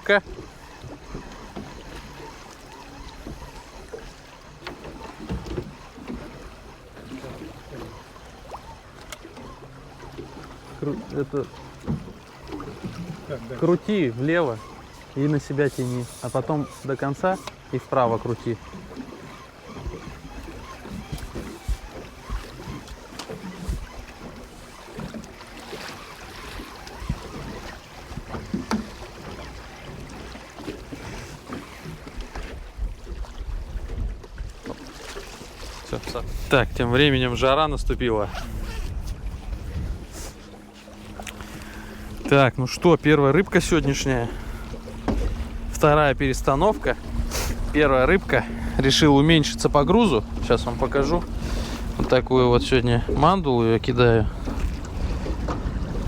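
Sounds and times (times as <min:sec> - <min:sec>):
water splashing against hull: 0:00.0 - 0:56.0
wind rumbling on microphone: 0:19.8 - 0:28.9, 0:30.9 - 0:34.7, 0:35.4 - 0:56.0.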